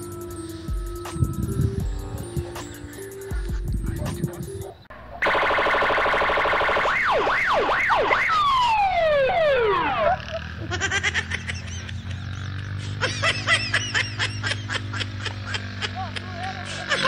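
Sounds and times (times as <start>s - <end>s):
electronic siren yelping and wailing: 5.2s - 10.6s.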